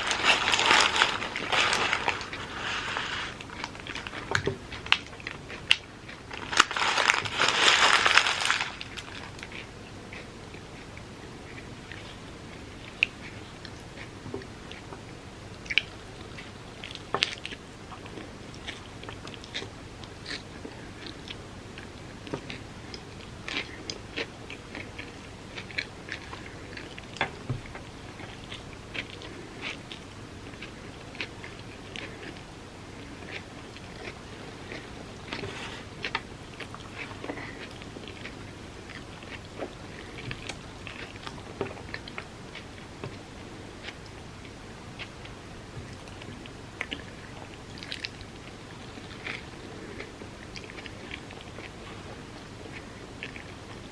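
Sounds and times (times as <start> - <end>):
person biting and chewing food: 0.0 - 14.1.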